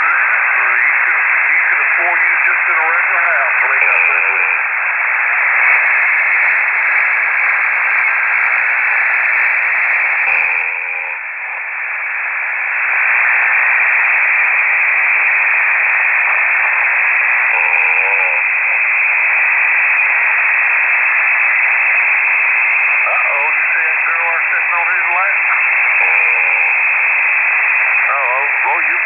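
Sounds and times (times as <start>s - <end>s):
warbling radio fragments: 0.0s - 4.6s, 10.0s - 11.2s, 17.5s - 18.8s, 23.1s - 27.0s, 28.0s - 29.0s
shortwave radio static hiss: 0.0s - 29.0s.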